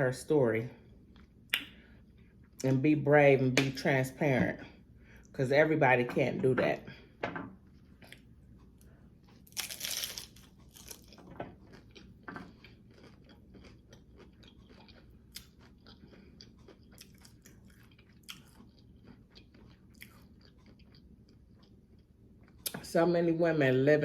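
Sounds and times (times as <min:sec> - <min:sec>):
chewing with small crunches: 0:00.8 - 0:02.7, 0:07.6 - 0:22.9
crunchy bite: 0:09.5 - 0:12.1.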